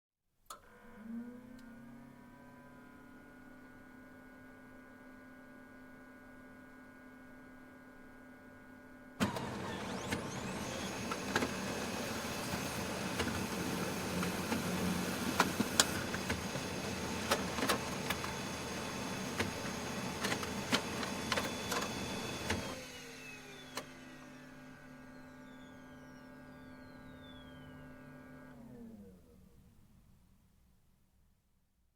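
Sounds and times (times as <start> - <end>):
printer motors and fan hum: 1.6 - 29.3
printer paper feeding clatter: 9.2 - 23.1.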